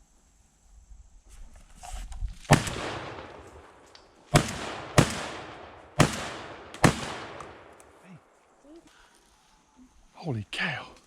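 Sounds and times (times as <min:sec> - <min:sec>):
brief rustle: 0:01.2 - 0:02.5
echoing gunshots: 0:02.5 - 0:08.0.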